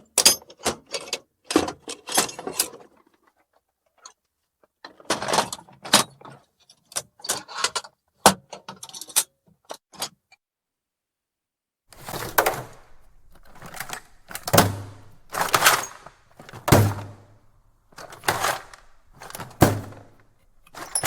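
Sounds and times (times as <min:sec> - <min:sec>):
metal tools clinking in toolbox: 0:12.0 - 0:21.0.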